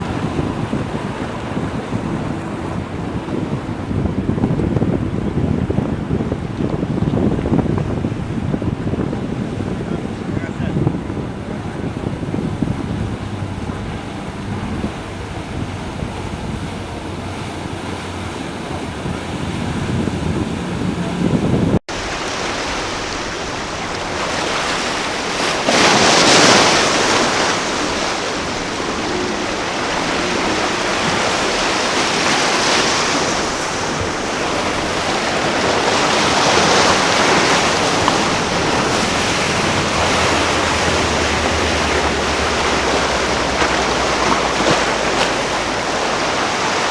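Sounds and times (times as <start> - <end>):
ocean waves breaking: 0.0 - 46.9
wind buffeting microphone: 0.0 - 46.9
low rumble: 11.0 - 21.8, 37.6 - 46.5.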